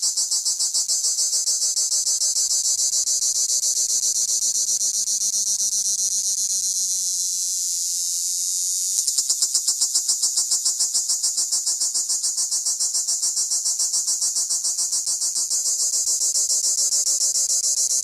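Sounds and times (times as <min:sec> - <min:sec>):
cicada buzzing: 0:03.7 - 0:13.1.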